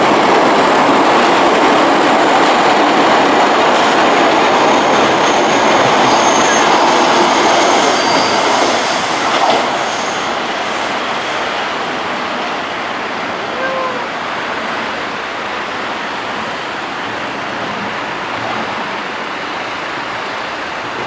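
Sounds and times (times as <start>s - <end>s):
metro train rolling by: 0.0s - 21.0s
high wheel squeals: 3.8s - 15.2s.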